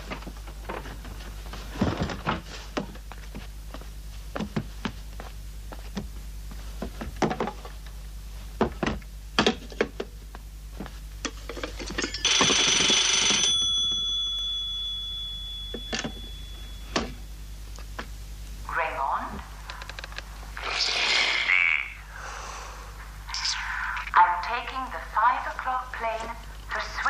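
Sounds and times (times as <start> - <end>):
telephone bell ringing: 12.0 - 17.2.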